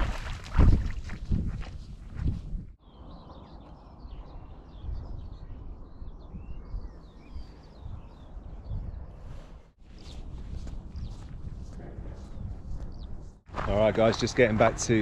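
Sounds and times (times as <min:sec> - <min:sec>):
small birds chirping: 0:02.8 - 0:11.4
steady low rumble: 0:10.2 - 0:13.8.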